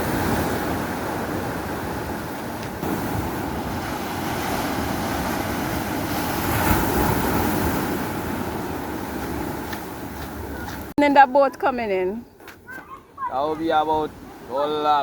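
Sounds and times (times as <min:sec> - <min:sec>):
wind on microphone: 0:00.0 - 0:10.9
surf at the shore: 0:00.0 - 0:11.6, 0:12.5 - 0:15.0.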